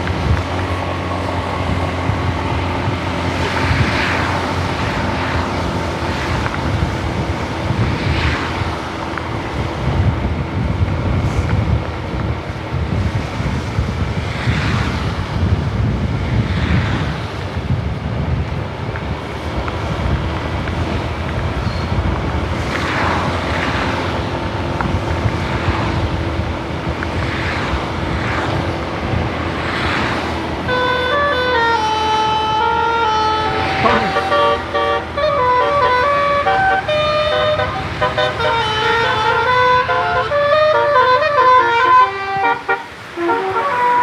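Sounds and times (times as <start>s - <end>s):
bus musical horn tune: 0.0s - 11.4s, 27.7s - 44.0s
traffic on wet road: 0.0s - 44.0s.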